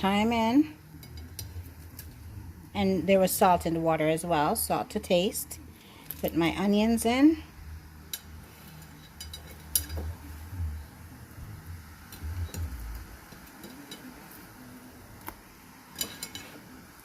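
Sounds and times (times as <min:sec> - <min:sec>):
cookware clicks and taps: 0:08.1 - 0:10.2, 0:12.1 - 0:14.2, 0:15.9 - 0:16.6.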